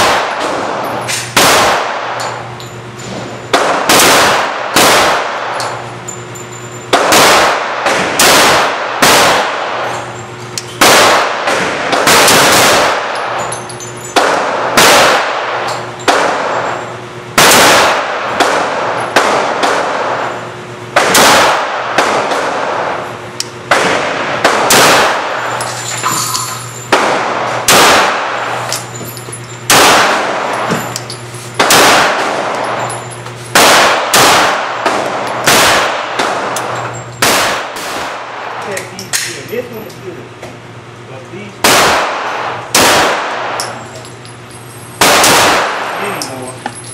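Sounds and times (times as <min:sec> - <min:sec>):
pistol shots echoing indoors: 0:00.0 - 0:02.5, 0:03.5 - 0:05.8, 0:06.9 - 0:10.1, 0:10.8 - 0:13.4, 0:14.1 - 0:16.8, 0:17.4 - 0:23.1, 0:23.7 - 0:28.6, 0:29.7 - 0:30.7, 0:31.6 - 0:32.9, 0:33.5 - 0:39.3, 0:41.6 - 0:43.8, 0:45.0 - 0:46.0
steady low hum: 0:00.0 - 0:46.9.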